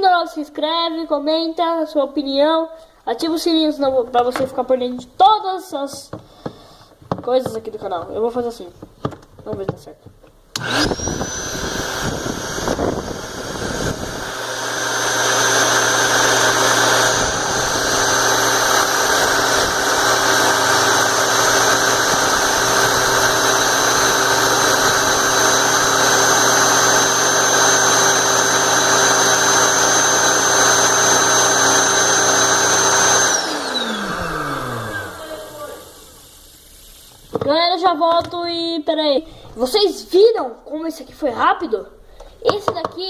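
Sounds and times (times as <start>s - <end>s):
air pump whining: 10.5s - 37.4s
rushing air: 10.6s - 14.6s.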